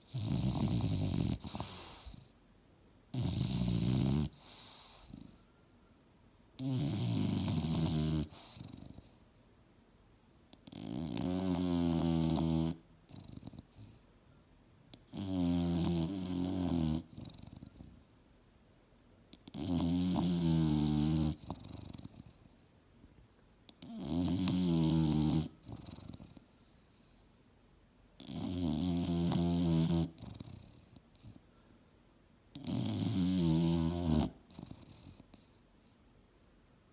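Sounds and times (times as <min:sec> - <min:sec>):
dog snoring: 0:00.0 - 0:02.4, 0:03.1 - 0:05.5, 0:06.6 - 0:09.3, 0:10.5 - 0:14.1, 0:14.9 - 0:18.4, 0:19.3 - 0:22.7, 0:23.7 - 0:27.3, 0:28.2 - 0:31.5, 0:32.5 - 0:36.0.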